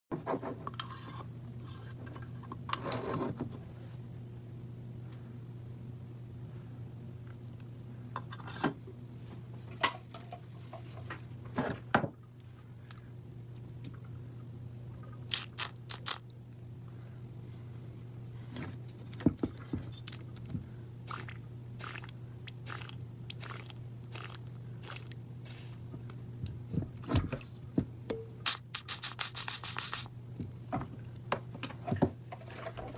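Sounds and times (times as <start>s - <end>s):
steady low hum: 0.2s - 32.9s
tools clicking and scraping: 15.3s - 16.3s, 28.5s - 30.1s.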